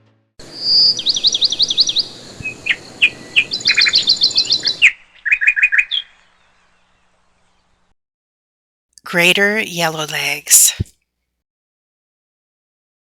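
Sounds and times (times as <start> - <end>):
bird whistled calls: 0.5 - 6.2.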